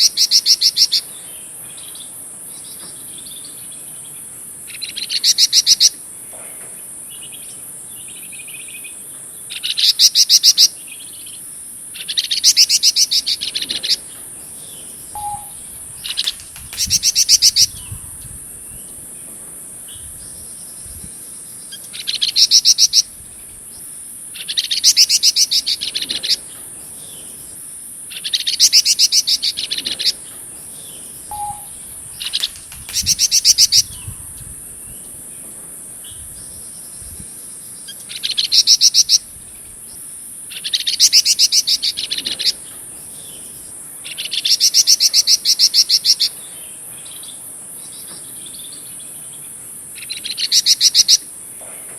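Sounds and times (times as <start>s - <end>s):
high insect drone: 0.0s - 51.9s
songbird rattling chatter: 12.0s - 37.1s.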